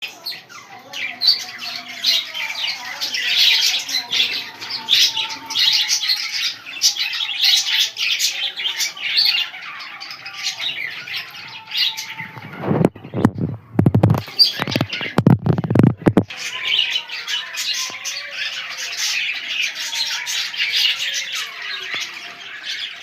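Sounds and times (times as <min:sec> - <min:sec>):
budgerigars chattering: 0:00.0 - 0:13.4.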